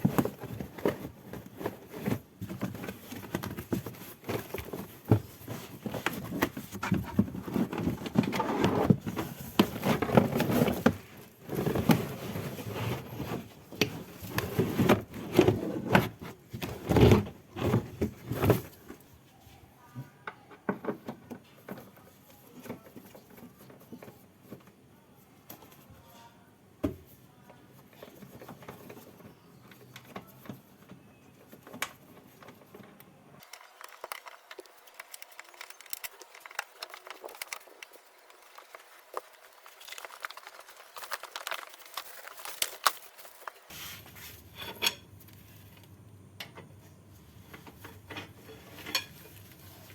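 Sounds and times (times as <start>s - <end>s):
hand tools clattering and scraping: 31.5s - 45.4s, 47.5s - 49.9s.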